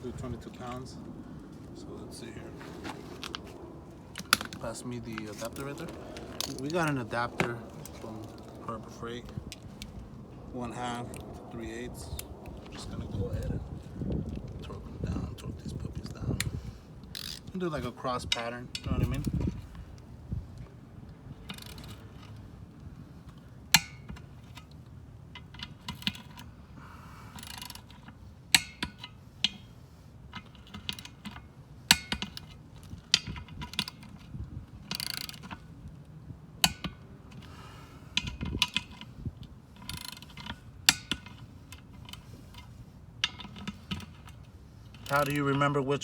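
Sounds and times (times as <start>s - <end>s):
torque wrench ratcheting: 17.1s - 17.5s, 27.3s - 28.0s, 34.8s - 35.6s, 38.2s - 42.6s.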